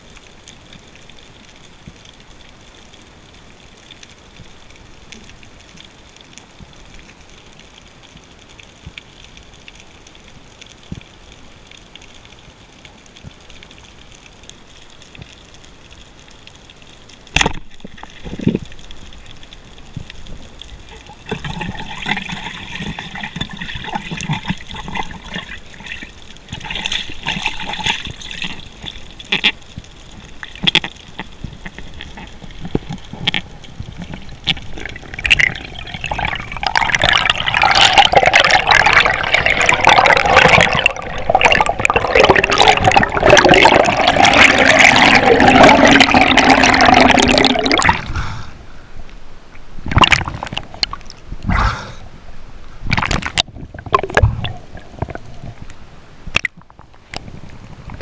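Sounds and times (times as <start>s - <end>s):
water sloshing and bubbling: 0.0s - 58.0s
rushing gurgling water: 12.6s - 48.8s, 49.4s - 58.0s.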